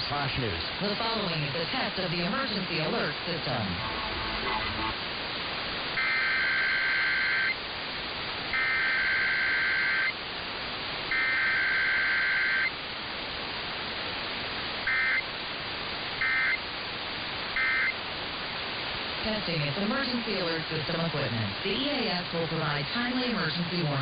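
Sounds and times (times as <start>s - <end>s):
steady hiss: 0.0s - 24.0s
buzzing digital data bursts: 6.0s - 7.6s, 8.5s - 10.2s, 11.1s - 12.7s, 14.8s - 15.2s, 16.2s - 16.6s, 17.6s - 18.0s.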